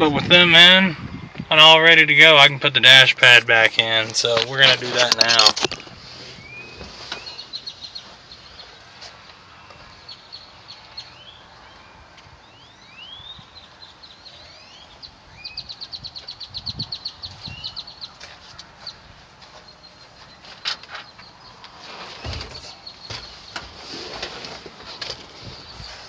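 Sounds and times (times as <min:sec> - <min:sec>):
birds chirping: 0:00.0 - 0:26.0
rapid bird trill: 0:10.0 - 0:19.0.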